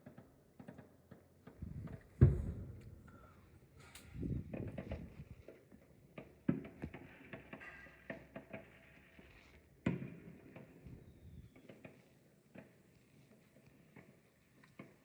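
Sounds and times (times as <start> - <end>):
fireworks pops and crackles: 0.0 - 15.0
loud firework bangs: 1.6 - 3.1.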